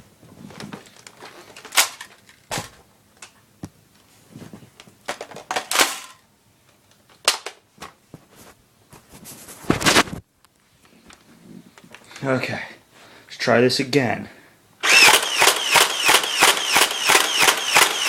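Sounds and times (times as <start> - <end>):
plastic rattling bursts: 14.8 - 18.0.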